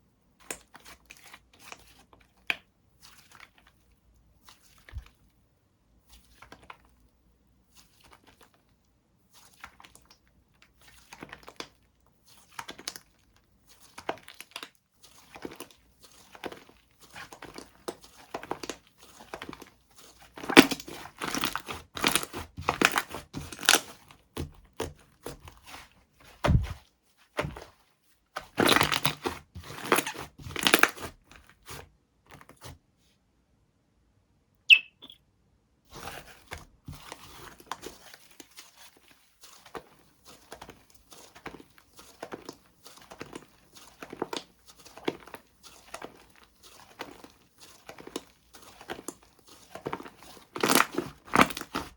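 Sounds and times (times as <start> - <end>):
slime squishing and crackling: 7.7 - 31.8, 35.9 - 51.9.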